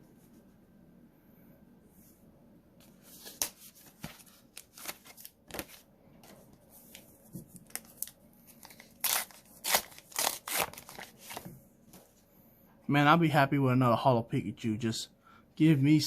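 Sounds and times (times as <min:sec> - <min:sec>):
cards being handled: 0:02.8 - 0:12.1
plastic wrapper tearing and crinkling: 0:07.6 - 0:11.4.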